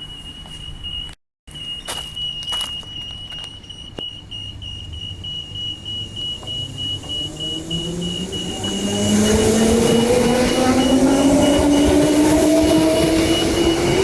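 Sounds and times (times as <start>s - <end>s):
crossing warning beeps: 0.0s - 14.0s
electric train motor whine: 1.9s - 14.0s
low engine hum: 5.8s - 14.0s.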